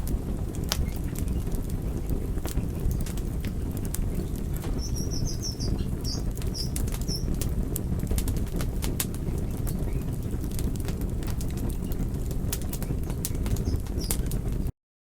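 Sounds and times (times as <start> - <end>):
fire crackling and popping: 0.0 - 14.7
fire low rumble: 0.0 - 14.7.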